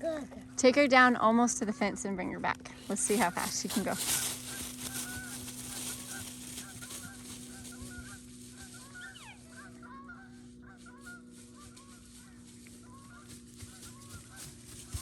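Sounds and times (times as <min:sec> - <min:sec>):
distant flock of birds calling: 0:00.0 - 0:15.0
faint steady hum: 0:00.0 - 0:15.0.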